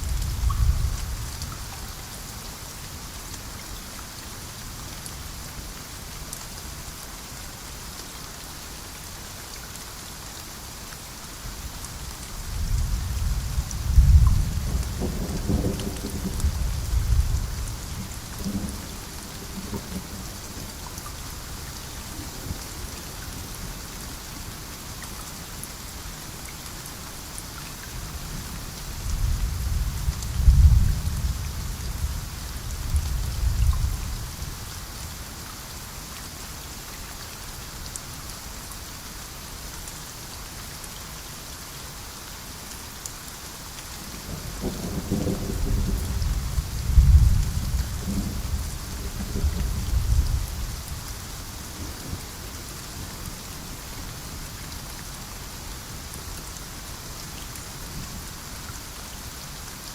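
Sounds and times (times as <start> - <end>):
rain hissing: 10.5 - 40.3, 43.9 - 59.9
thunder rumbling: 44.7 - 50.7.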